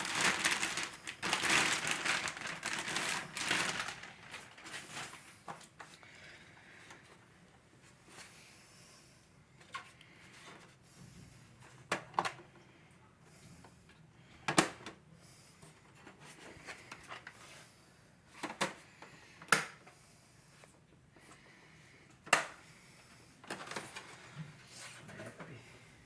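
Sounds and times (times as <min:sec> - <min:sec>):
plastic packaging clicks and knocks: 0:00.0 - 0:05.9.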